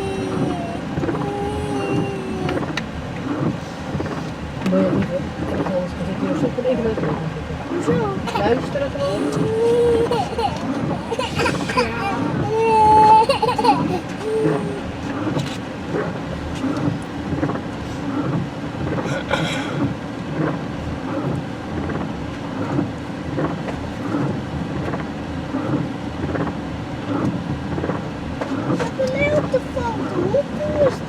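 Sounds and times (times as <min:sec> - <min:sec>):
rain taps: 0:00.0 - 0:31.0
vehicle engine hum: 0:00.0 - 0:31.0.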